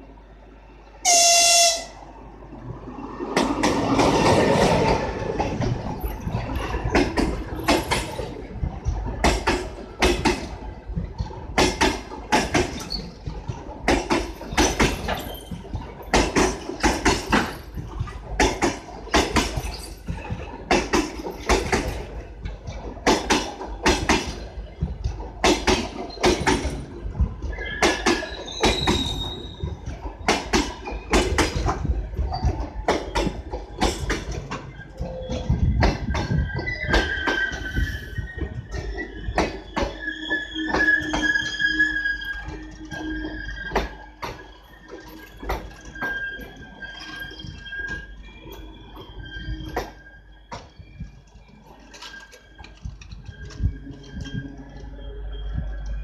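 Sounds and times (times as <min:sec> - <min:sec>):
train rolling past: 0:00.0 - 0:56.0
locomotive horn blast: 0:01.0 - 0:02.0
wheels clattering over rail joints: 0:03.2 - 0:56.0.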